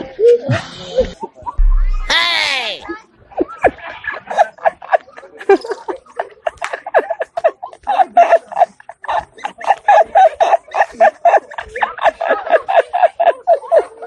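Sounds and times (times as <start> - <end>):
voices: 1.0 - 14.0
people laughing hard: 3.3 - 14.0.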